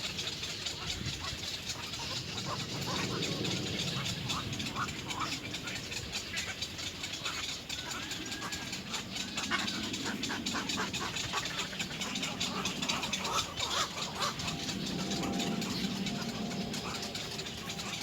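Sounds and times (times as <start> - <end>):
bird chicks begging calls: 0.1 - 18.0.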